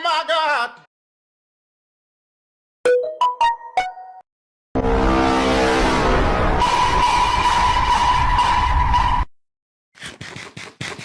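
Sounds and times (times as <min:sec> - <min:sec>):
loud noise with high tone: 0:04.8 - 0:09.2
short scratching strokes: 0:10.0 - 0:11.0.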